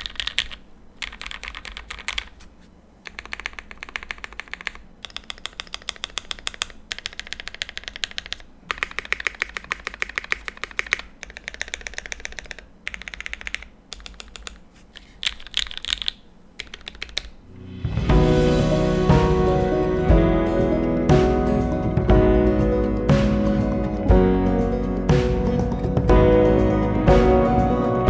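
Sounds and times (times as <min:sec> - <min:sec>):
mechanical keyboard typing: 0:00.0 - 0:02.4, 0:03.0 - 0:17.4
music: 0:17.5 - 0:28.0.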